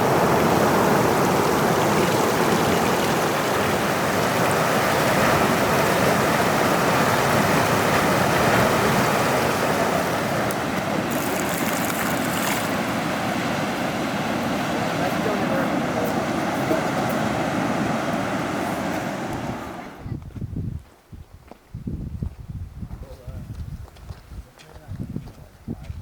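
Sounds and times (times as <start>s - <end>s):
rushing flowing water: 0.0s - 20.0s.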